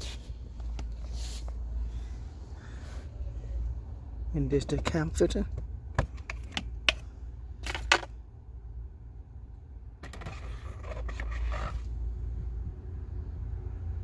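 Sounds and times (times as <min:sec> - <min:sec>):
filter scraping and rustling: 0:10.0 - 0:12.0.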